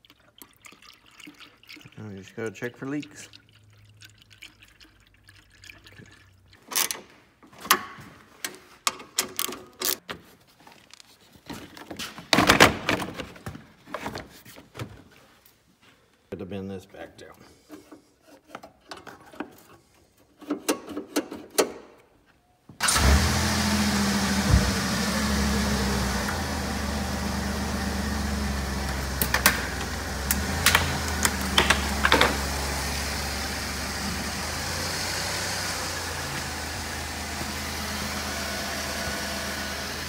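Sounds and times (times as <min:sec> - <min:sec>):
minivan engine idling: 0:22.8 - 0:40.0.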